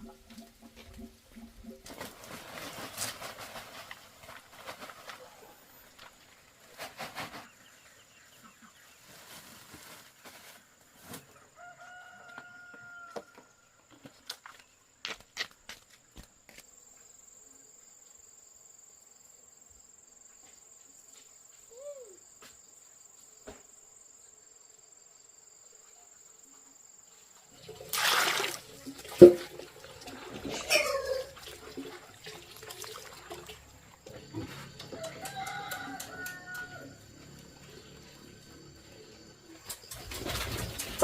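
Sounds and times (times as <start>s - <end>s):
chickens clucking: 29.2s - 32.4s.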